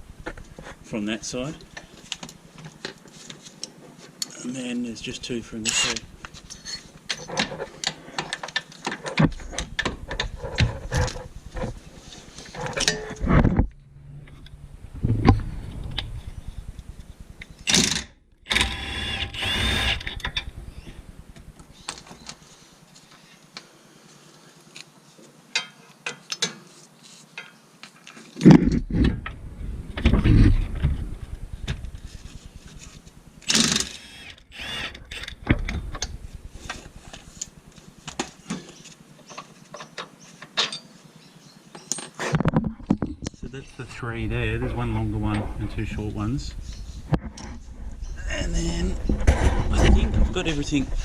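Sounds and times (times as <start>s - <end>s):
mechanical bursts: 15.0s - 21.9s, 33.4s - 37.6s.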